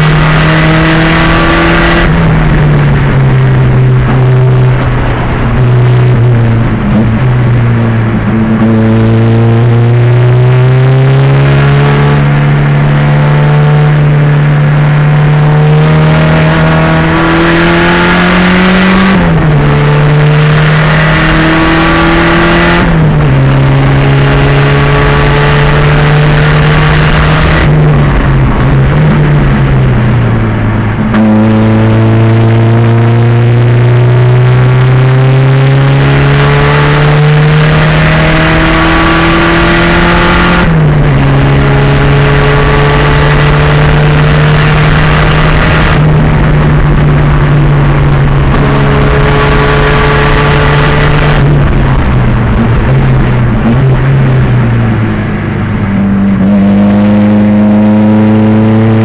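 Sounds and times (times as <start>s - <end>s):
race car engine revving: 0.0s - 59.0s.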